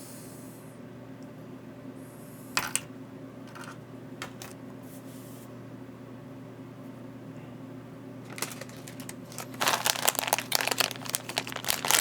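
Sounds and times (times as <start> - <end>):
plastic crinkling: 8.2 - 12.0.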